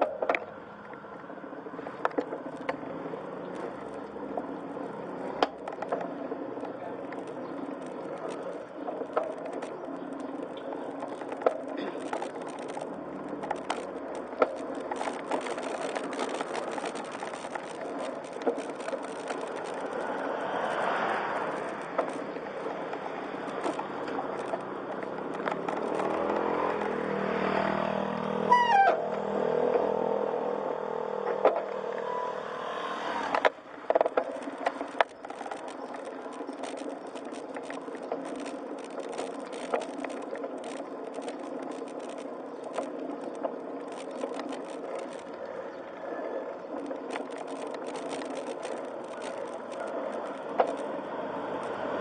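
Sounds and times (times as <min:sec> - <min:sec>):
motor vehicle running: 0:00.0 - 0:45.3, 0:47.2 - 0:52.0
falling whistle-like tone: 0:28.5 - 0:29.1, 0:32.0 - 0:33.2.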